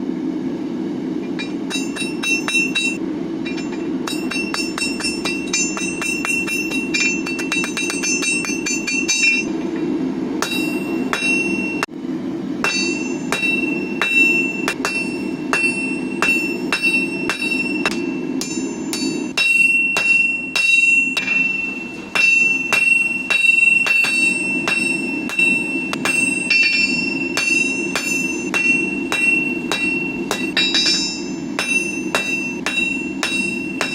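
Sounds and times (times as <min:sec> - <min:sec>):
hammer striking steel on anvil: 0:01.2 - 0:11.9, 0:12.6 - 0:33.9.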